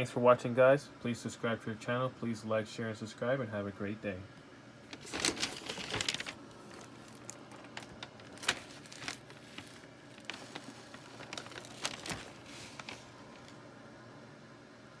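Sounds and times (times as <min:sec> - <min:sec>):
crinkling: 0:04.9 - 0:13.6.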